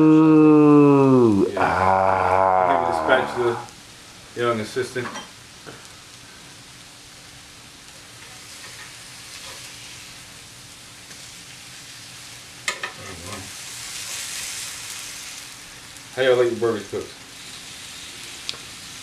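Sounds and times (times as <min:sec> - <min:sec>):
person speaking: 0:00.0 - 0:03.7
burger patties sizzling: 0:00.0 - 0:19.0.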